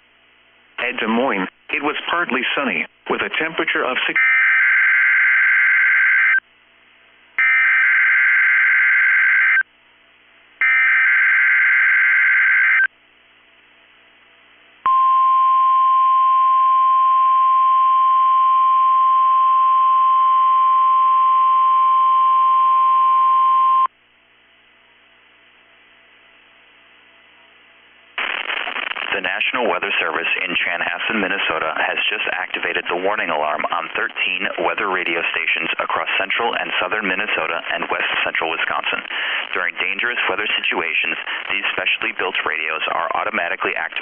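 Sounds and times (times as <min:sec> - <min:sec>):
faint radio hiss: 0:00.0 - 0:04.2, 0:24.4 - 0:44.0
steady warning alarm tone: 0:04.2 - 0:06.4, 0:07.4 - 0:09.6, 0:10.6 - 0:12.9.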